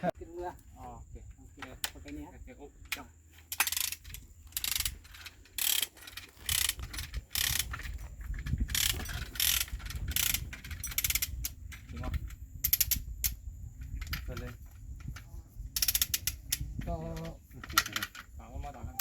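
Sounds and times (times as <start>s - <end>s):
ratchet wrench clicking: 2.8s - 15.2s, 15.8s - 18.3s.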